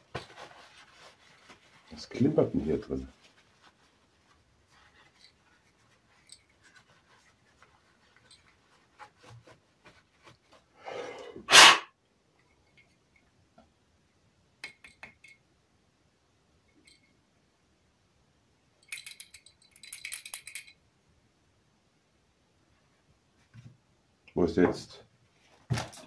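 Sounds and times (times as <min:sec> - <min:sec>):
rushing air burst: 0:11.4 - 0:11.9
loose metal part clinking: 0:18.8 - 0:20.8.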